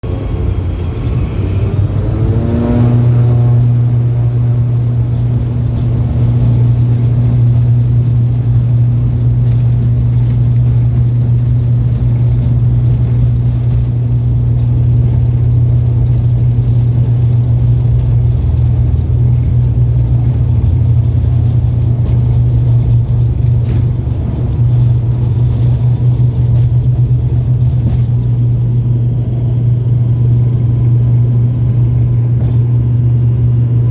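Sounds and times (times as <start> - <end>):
turboprop engines drone: 0.0 - 33.9.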